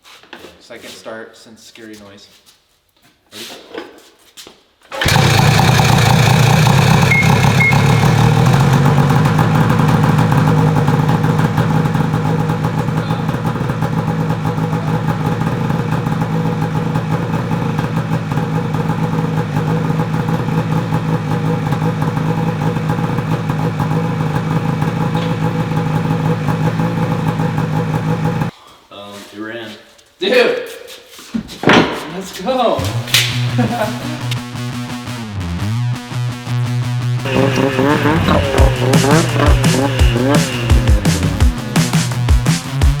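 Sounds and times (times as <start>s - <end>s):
snowmobile engine idling: 5.0s - 28.5s, 32.8s - 34.5s, 37.2s - 43.0s.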